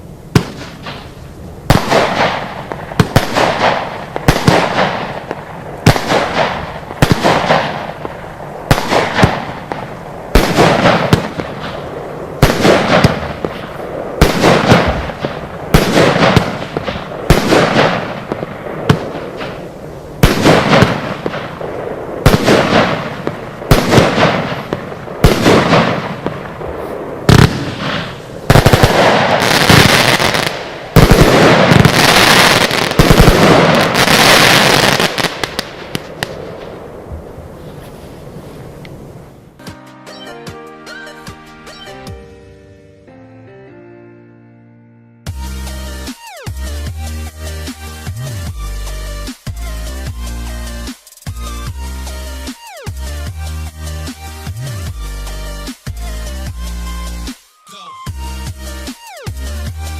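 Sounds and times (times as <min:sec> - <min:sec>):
firework bangs: 0:00.0 - 0:39.6.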